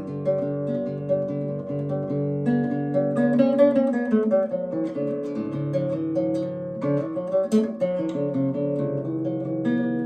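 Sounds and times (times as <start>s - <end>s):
fingerstyle acoustic guitar: 0.0s - 10.0s.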